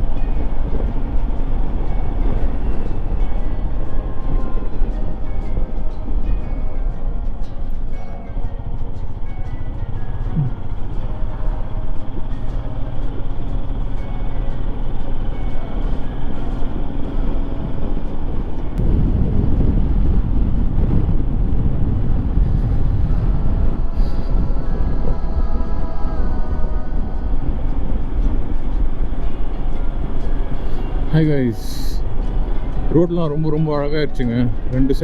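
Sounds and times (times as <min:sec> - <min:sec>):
wind rushing over microphone: 0:16.1 - 0:33.2.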